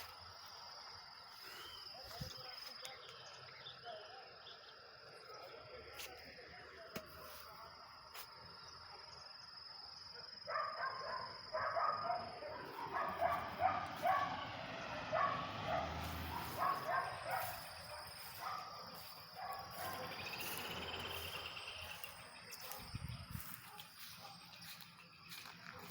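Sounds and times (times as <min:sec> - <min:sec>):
high insect trill: 0:00.0 - 0:25.9.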